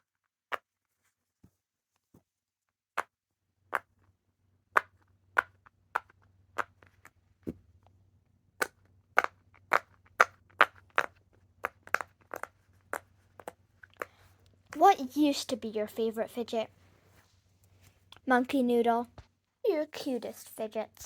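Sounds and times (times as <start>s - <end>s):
fidget toy clicking: 8.6s - 14.9s.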